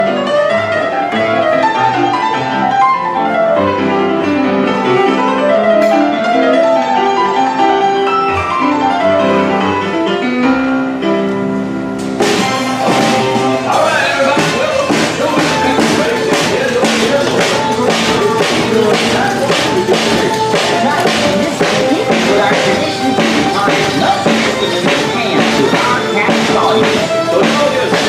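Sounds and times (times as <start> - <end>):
classical keyboard music: 0.0 - 28.0
loud noisy sound: 12.0 - 28.0.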